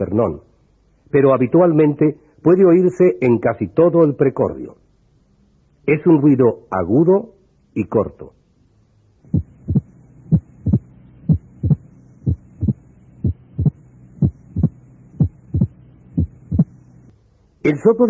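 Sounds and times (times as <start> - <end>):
low steady hum: 0.0 - 18.0
heartbeat sounds: 9.3 - 16.7.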